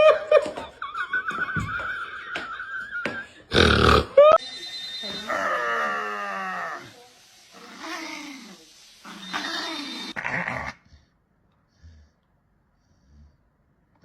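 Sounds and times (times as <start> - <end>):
animal calling: 0.8 - 7.0, 7.6 - 10.2.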